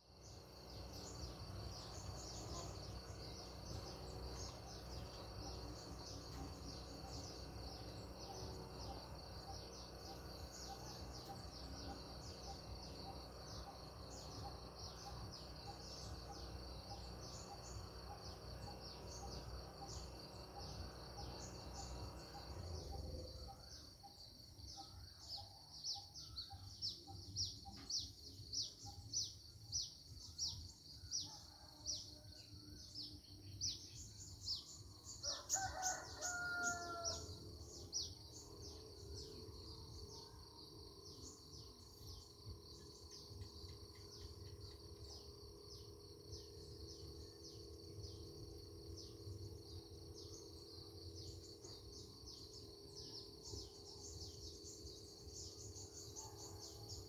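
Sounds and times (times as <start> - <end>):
birds chirping: 0.0 - 25.2.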